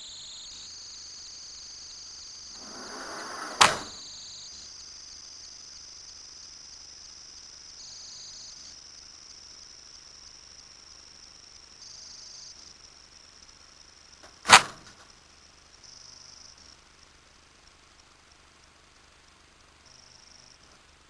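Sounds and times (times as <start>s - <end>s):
rushing noise: 2.6s - 4.0s
sharp bang: 2.6s - 4.0s.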